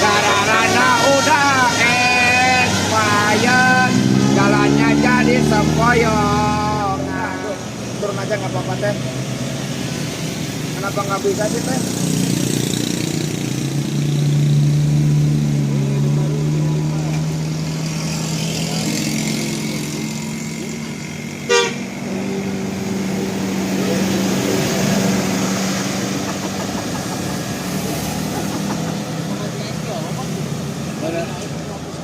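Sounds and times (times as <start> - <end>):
bus engine running: 0.0 - 32.0
street noise: 0.0 - 32.0
bus horn sounding: 21.4 - 22.0.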